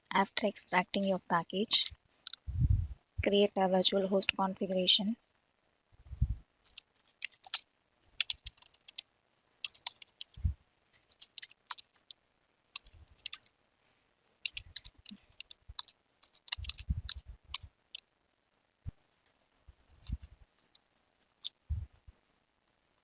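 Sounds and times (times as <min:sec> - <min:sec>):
keyboard typing clicks: 0:06.7 - 0:07.6, 0:08.2 - 0:09.0, 0:09.6 - 0:10.4, 0:11.1 - 0:12.1, 0:12.8 - 0:13.5, 0:14.4 - 0:17.7.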